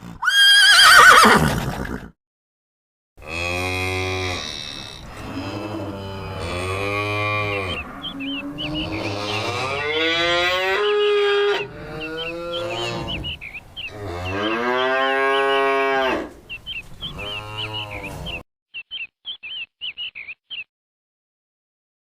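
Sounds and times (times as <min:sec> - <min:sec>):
cows mooing: 0:03.2 - 0:16.4, 0:17.0 - 0:18.4.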